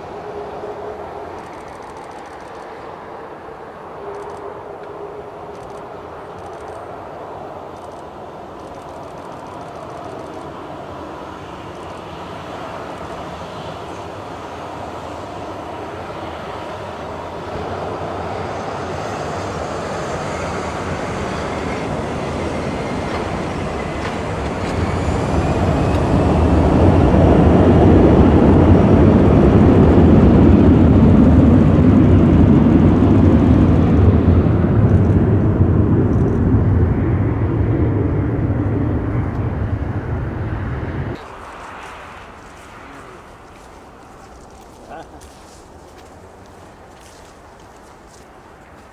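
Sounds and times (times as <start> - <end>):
jet engines rumbling: 0.0 - 48.9
faint rising engine whine: 17.5 - 45.6.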